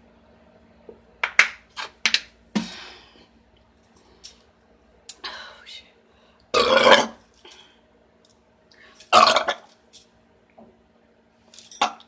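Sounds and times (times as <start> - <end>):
woman belching: 6.6 - 7.2, 9.1 - 9.7.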